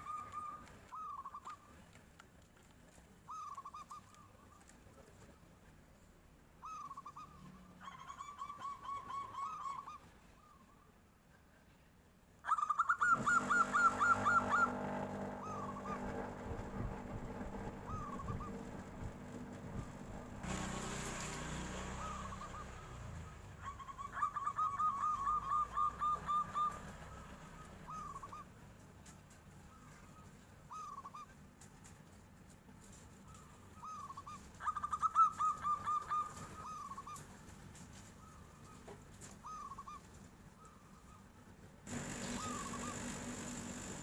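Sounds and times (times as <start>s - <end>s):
dove cooing: 12.5s - 20.6s, 21.8s - 28.5s, 33.8s - 37.3s, 38.2s - 41.2s, 42.0s - 43.2s.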